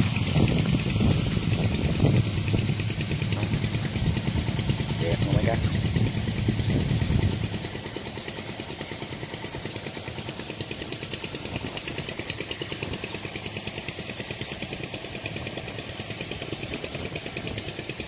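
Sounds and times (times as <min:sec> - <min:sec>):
engine running steadily: 0:00.0 - 0:18.0.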